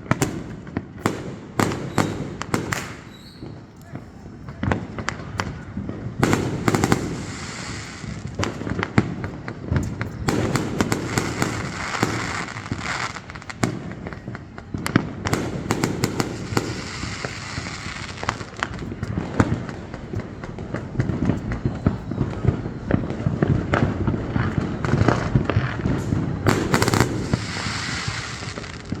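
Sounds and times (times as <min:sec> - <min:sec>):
sharp cracks and bangs: 0:00.0 - 0:03.9.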